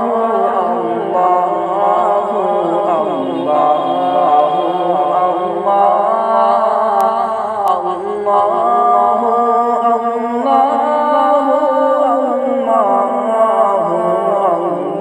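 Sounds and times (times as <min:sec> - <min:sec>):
a cappella voices singing: 0:00.0 - 0:15.0.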